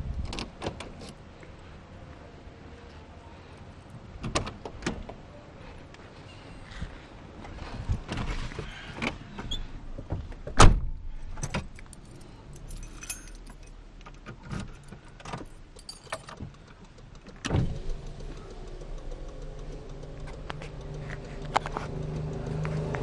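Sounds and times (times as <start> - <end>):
keys jangling: 11.4 - 13.8, 14.6 - 16.4.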